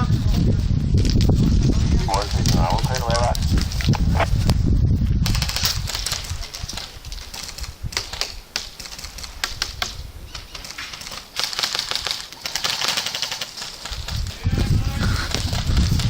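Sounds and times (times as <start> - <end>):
airsoft guns firing rapid clicks: 5.2 - 16.0.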